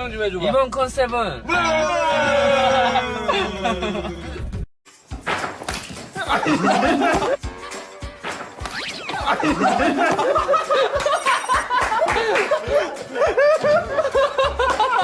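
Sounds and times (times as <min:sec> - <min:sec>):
people laughing: 0:02.2 - 0:04.5, 0:06.1 - 0:07.4, 0:09.1 - 0:15.0.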